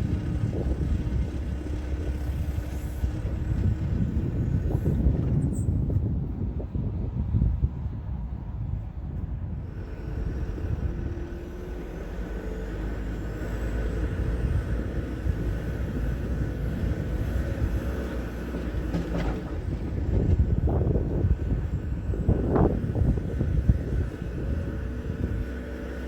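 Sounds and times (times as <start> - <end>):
diesel excavator engine running: 0.0 - 26.0
short clatter: 18.5 - 20.4.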